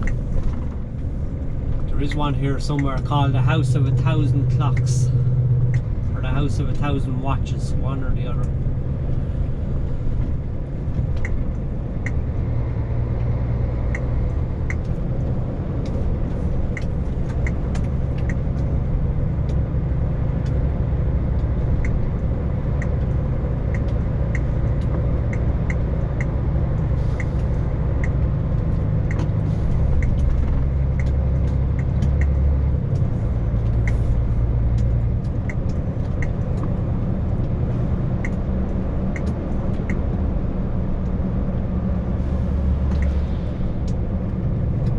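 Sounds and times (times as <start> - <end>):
light ticks and rattles: 0.0 - 9.2, 9.8 - 44.9
lorry diesel engine drone: 0.0 - 44.9.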